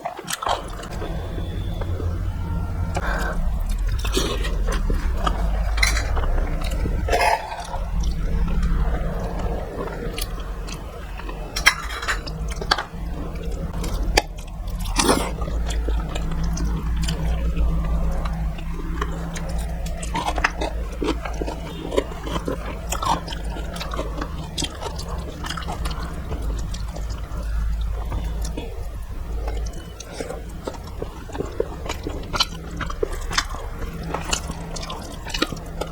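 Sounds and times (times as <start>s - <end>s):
person chewing: 0.1s - 35.9s
steady low hum: 0.4s - 35.9s.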